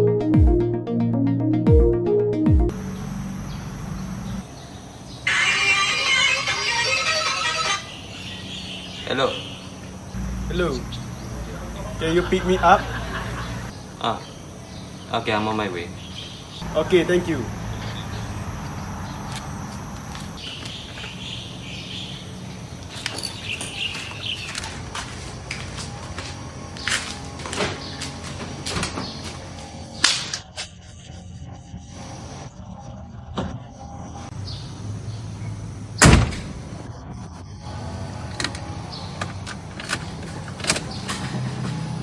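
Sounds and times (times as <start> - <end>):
birds chirping: 2.7 - 26.0, 34.3 - 37.7
steady low hum: 7.9 - 20.4.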